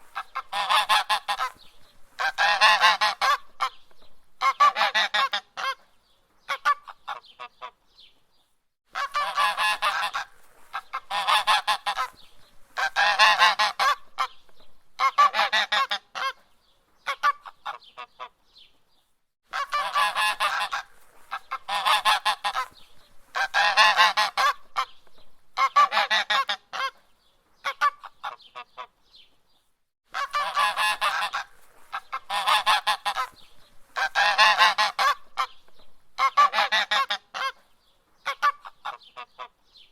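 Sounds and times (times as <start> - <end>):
goose honking: 0.1 - 1.6, 2.2 - 3.8, 4.4 - 5.8, 8.9 - 12.2, 12.8 - 14.4, 15.0 - 16.4, 19.5 - 24.9, 25.6 - 27.0, 30.1 - 35.6, 36.2 - 37.6.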